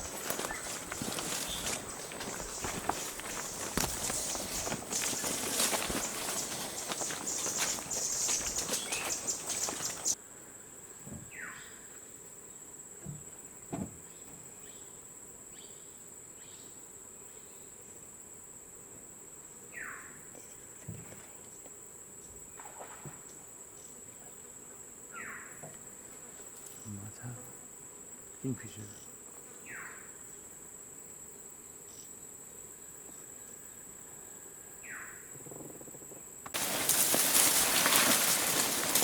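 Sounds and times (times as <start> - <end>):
footsteps crunching: 0.0 - 10.2, 36.5 - 39.0.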